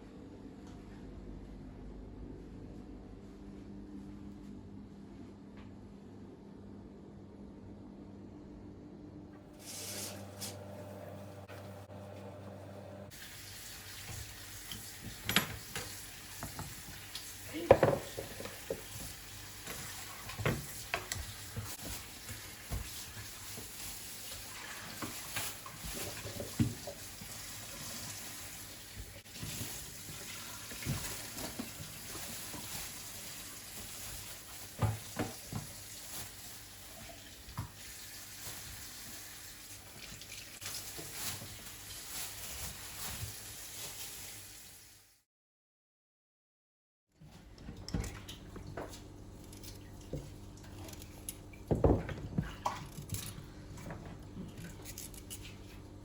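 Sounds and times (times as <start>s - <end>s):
kitchen items knocking and clinking: 17.5s - 19.1s.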